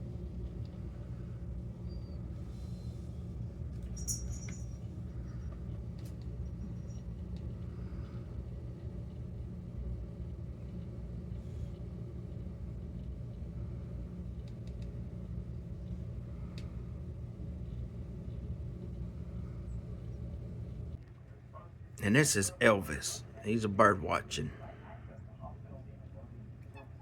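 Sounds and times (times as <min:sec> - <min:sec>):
low mechanical rumble: 0:00.0 - 0:21.1.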